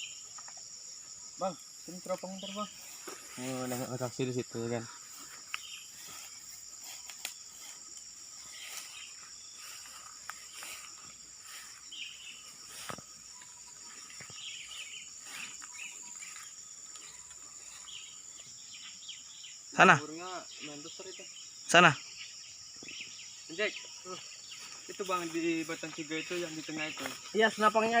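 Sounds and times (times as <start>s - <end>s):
insects droning: 0.0s - 28.0s
bird chirps: 1.2s - 28.0s.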